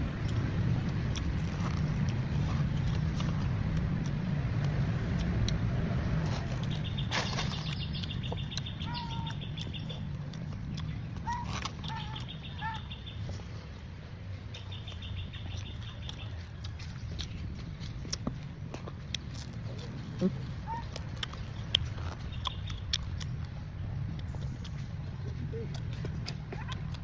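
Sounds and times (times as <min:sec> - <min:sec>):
traffic rumble: 0:00.0 - 0:27.0.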